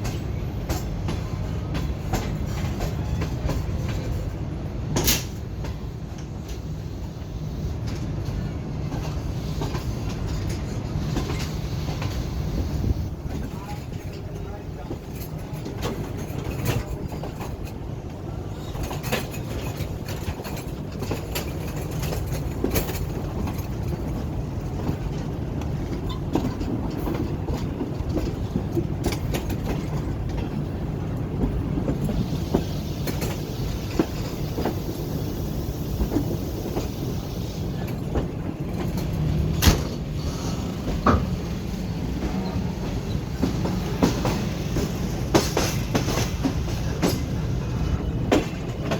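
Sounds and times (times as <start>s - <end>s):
train wheels rumbling on track: 0.0s - 48.9s
hiss: 32.1s - 37.9s, 39.7s - 41.2s.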